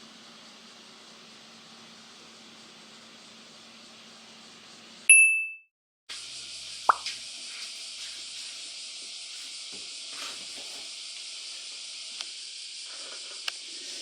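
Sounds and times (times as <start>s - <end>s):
cicadas singing: 6.1s - 14.0s.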